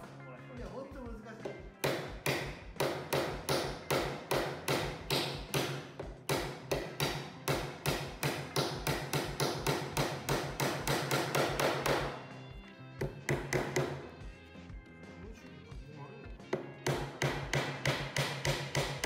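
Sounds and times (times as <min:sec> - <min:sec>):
hammer driving nails into wood: 0:01.8 - 0:12.3, 0:13.0 - 0:14.1, 0:16.5 - 0:19.0.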